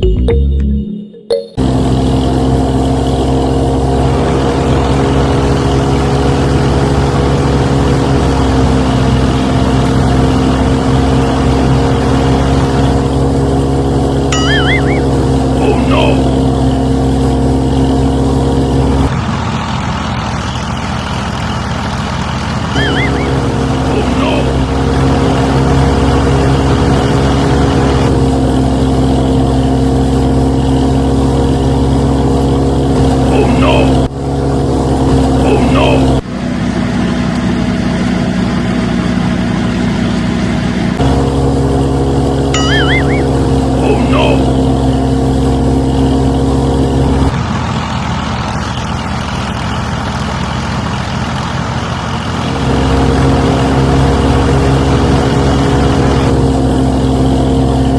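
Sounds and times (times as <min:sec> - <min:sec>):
warbling whistle: 0:14.3 - 0:15.1, 0:22.7 - 0:23.4, 0:42.6 - 0:43.4.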